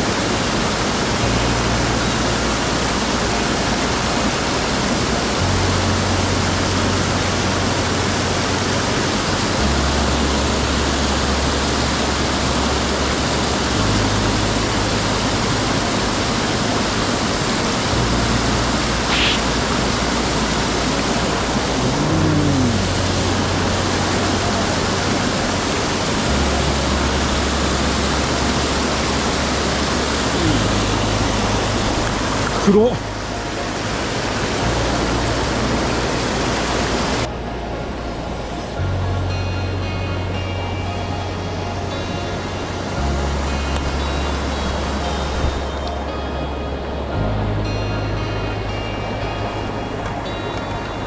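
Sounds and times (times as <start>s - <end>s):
background music: 0.0s - 51.0s
mountain stream rushing: 0.0s - 51.0s
brief sharp sound: 19.1s - 19.6s.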